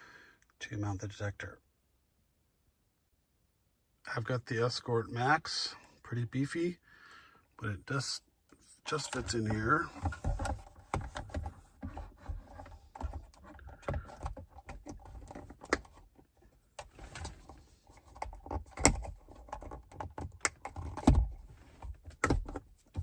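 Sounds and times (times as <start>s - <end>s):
plastic clicks and rattles: 18.0s - 21.4s.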